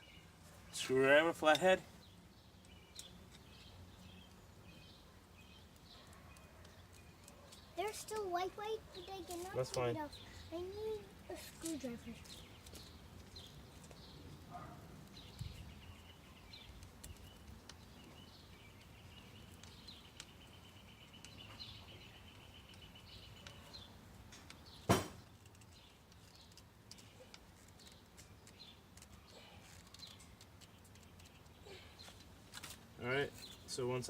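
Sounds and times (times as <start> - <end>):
bird chirps: 2.0 - 32.2
sharp knock: 24.9 - 25.2.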